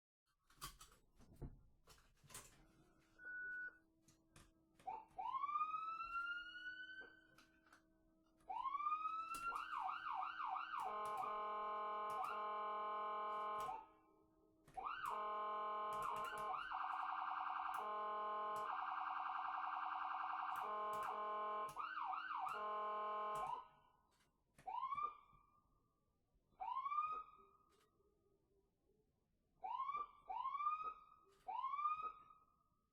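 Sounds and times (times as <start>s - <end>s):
electronic ambulance siren: 4.8s - 7.6s, 8.5s - 14.0s, 14.8s - 23.8s, 24.6s - 25.6s, 26.6s - 27.7s, 29.6s - 32.6s.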